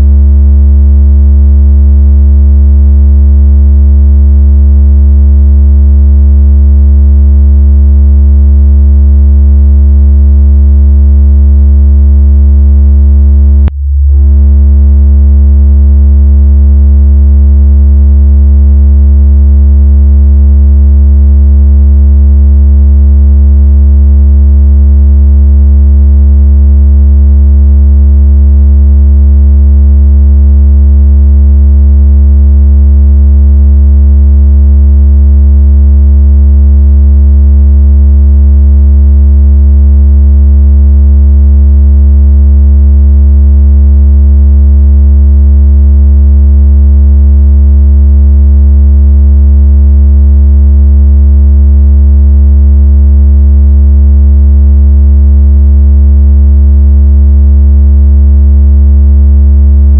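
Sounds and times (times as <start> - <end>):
deep synthesized hum: 13.6 - 15.6.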